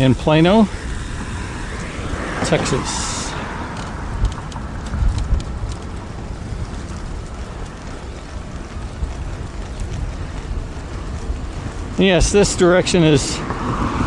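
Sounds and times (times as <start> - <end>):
road noise: 0.0 - 14.0
wind rumbling on microphone: 0.0 - 14.0.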